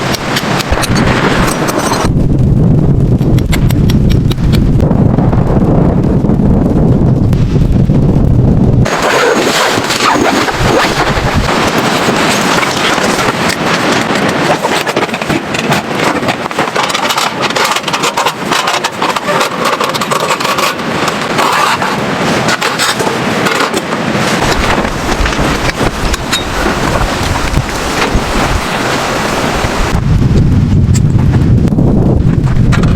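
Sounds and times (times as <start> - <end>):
blizzard wind on microphone: 0.0 - 32.9
low rumble: 0.7 - 12.3, 24.4 - 32.9.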